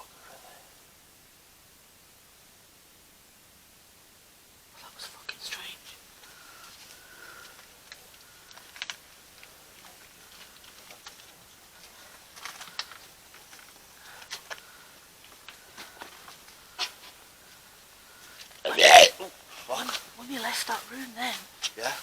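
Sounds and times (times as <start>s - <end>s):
faint clicks and taps: 6.2s - 17.6s.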